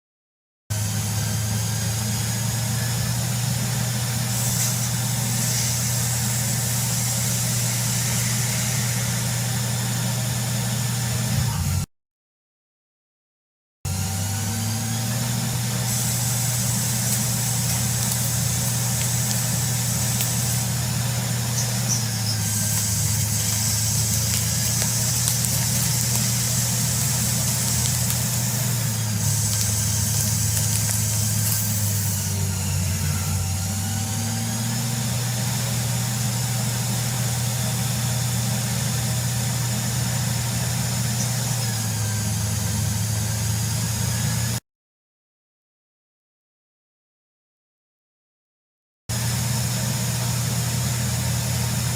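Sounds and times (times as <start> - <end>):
lathe machine hum: 0.7 - 11.4, 13.9 - 44.6
high hiss: 3.0 - 9.6, 15.5 - 33.1.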